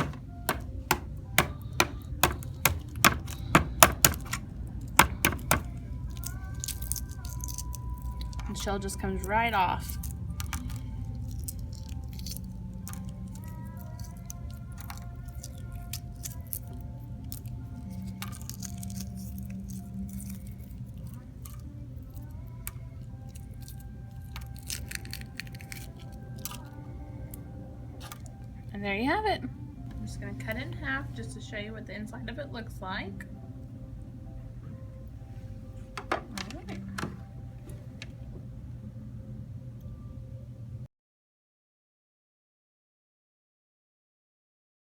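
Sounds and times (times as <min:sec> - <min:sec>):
egg shell being tapped: 0:00.0 - 0:04.4, 0:05.0 - 0:05.8
eggshell crackling: 0:00.0 - 0:26.8
low steady hum: 0:00.0 - 0:40.9.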